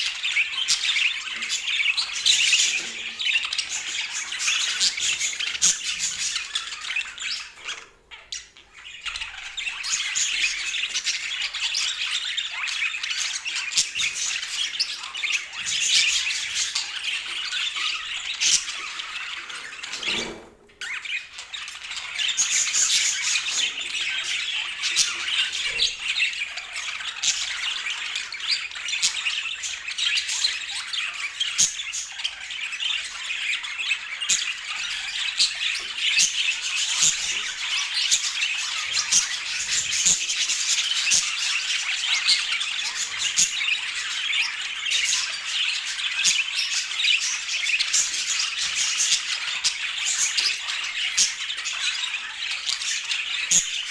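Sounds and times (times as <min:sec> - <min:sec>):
budgerigars chattering and warbling: 0:00.0 - 0:53.9.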